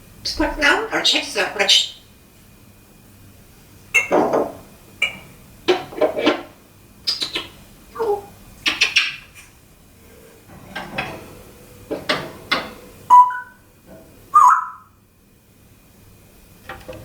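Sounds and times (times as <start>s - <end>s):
parrot whistled calls: 7.0s - 9.3s, 13.1s - 13.6s, 14.3s - 15.0s.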